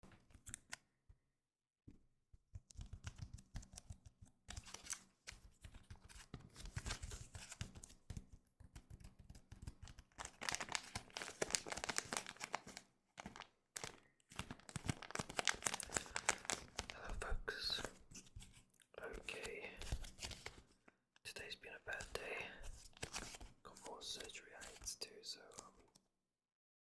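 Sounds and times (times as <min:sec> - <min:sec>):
foil wrapper crinkling and tearing: 0:10.1 - 0:17.0.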